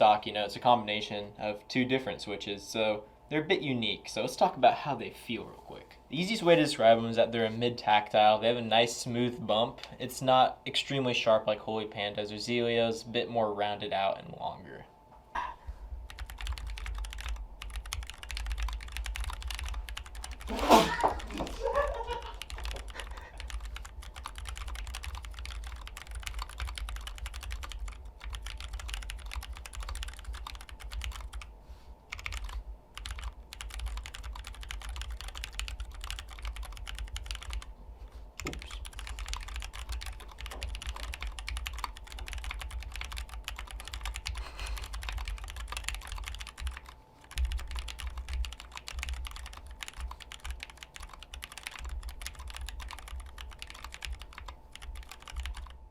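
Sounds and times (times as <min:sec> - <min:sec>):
mechanical keyboard typing: 0:16.1 - 0:21.3, 0:22.1 - 0:31.5, 0:32.1 - 0:37.7, 0:38.4 - 0:55.8.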